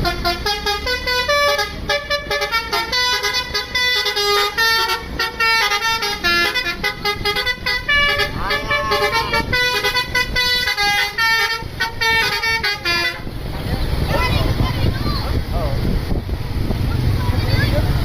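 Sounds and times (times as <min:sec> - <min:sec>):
multi-tone bus horn melody: 0:00.0 - 0:13.5.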